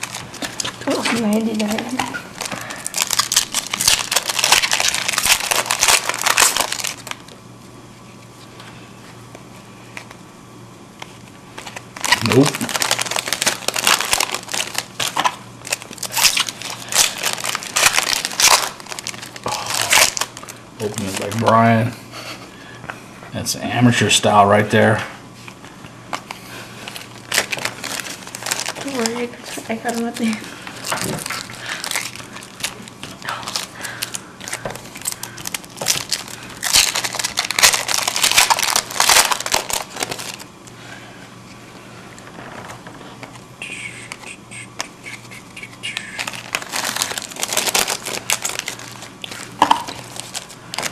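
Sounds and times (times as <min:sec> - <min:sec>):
plastic wrapper tearing and crinkling: 0:00.0 - 0:07.4, 0:11.0 - 0:21.8, 0:26.1 - 0:40.7, 0:45.7 - 0:50.9.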